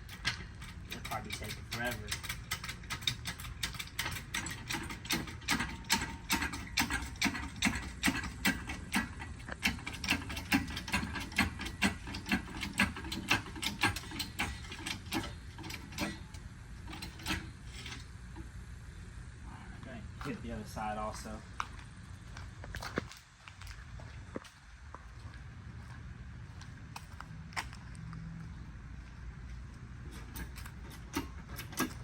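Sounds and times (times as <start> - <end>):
floor jack ratcheting clicks: 0.0 - 18.1, 30.1 - 32.0.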